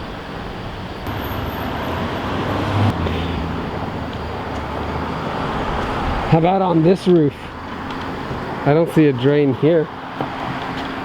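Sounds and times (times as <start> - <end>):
road traffic noise: 0.0 - 11.0
vehicle engine humming: 1.0 - 11.0.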